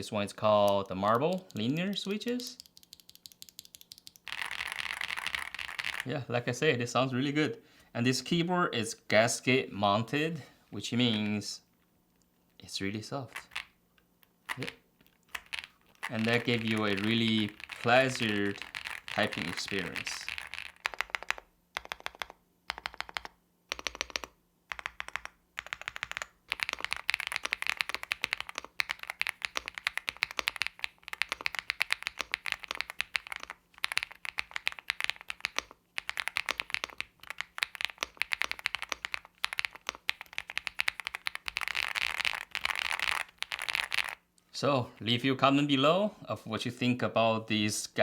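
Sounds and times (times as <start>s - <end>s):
mechanical keyboard typing: 0.5s - 6.1s, 13.3s - 13.7s, 14.5s - 44.2s.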